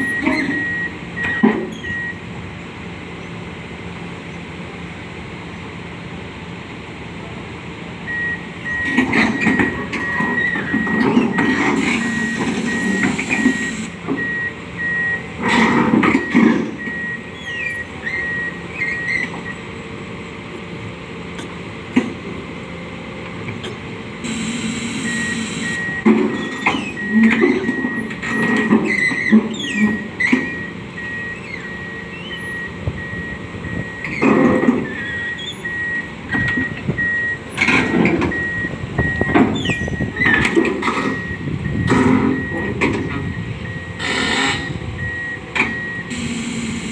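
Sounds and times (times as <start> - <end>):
reversing alarm beeping: 0.0 - 2.2, 8.1 - 15.3, 16.1 - 19.6, 24.2 - 46.9
backhoe engine running: 0.0 - 46.9.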